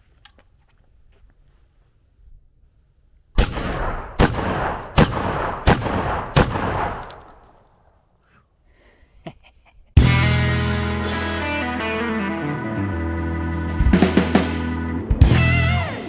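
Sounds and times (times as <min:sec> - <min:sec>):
gunshots with rolling echo: 0:03.4 - 0:07.6.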